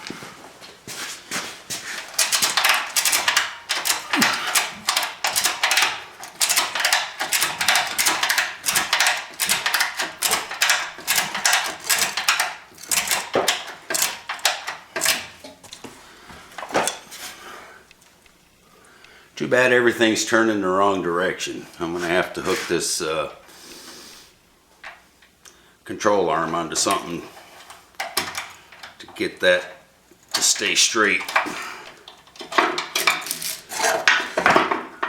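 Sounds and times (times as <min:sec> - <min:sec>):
ratchet strap clicking: 0:01.9 - 0:15.8, 0:31.3 - 0:34.1.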